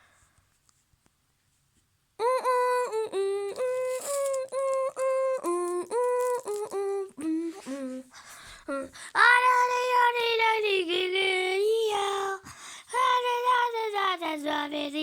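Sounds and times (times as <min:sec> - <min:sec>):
high voice singing: 0:02.2 - 0:15.0.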